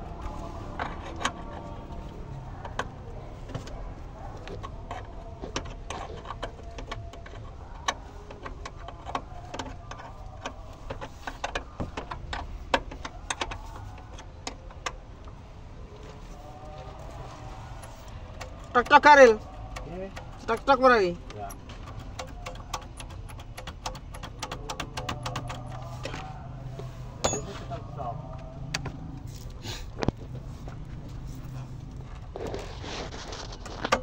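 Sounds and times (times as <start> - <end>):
hand tools clinking on metal: 27.2 - 28.0.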